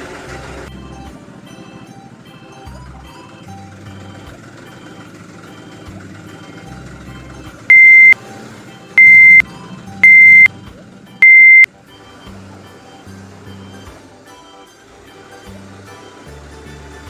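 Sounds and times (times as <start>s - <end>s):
loud electronic beeps: 7.7s - 8.2s, 9.0s - 9.4s, 10.0s - 10.5s, 11.2s - 11.7s.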